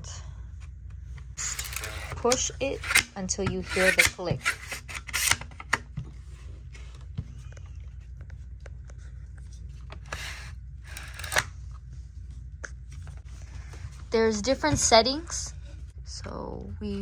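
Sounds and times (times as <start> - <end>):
low steady hum: 0.0 - 17.0
small handling clicks: 10.0 - 11.5.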